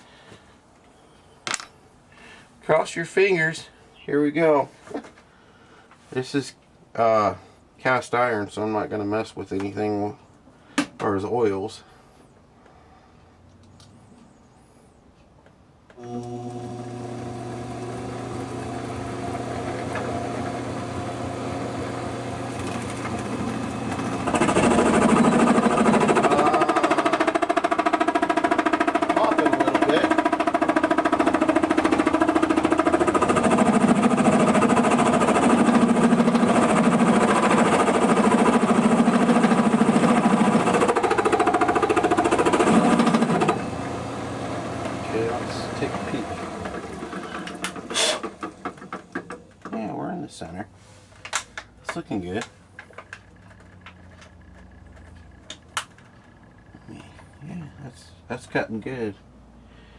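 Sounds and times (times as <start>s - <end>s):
cutter machining cast iron: 16.0s - 48.8s
milling machine motor humming: 16.0s - 49.8s.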